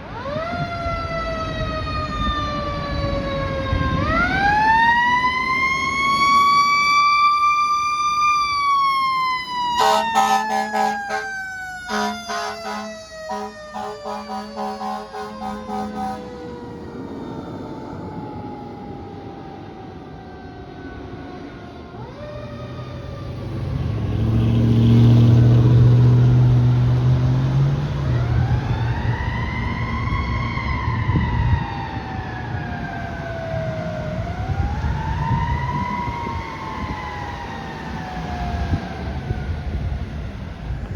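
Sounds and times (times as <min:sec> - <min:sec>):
truck engine rumble: 0:00.0 - 0:37.7
fire engine siren wailing: 0:00.0 - 0:40.9
air horn blast: 0:09.8 - 0:16.4.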